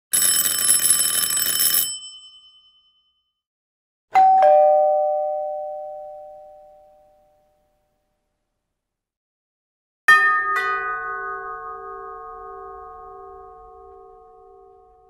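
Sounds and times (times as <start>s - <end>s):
doorbell ringing rapidly: 0.2s - 3.2s, 4.2s - 6.8s
two-tone ding-dong chime: 4.2s - 7.6s.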